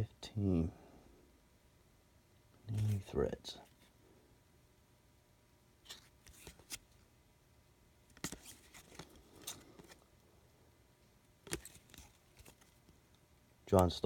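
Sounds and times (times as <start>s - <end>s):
cards flicking and rustling: 2.7s - 3.1s, 5.8s - 7.0s, 8.1s - 10.1s, 11.4s - 13.1s.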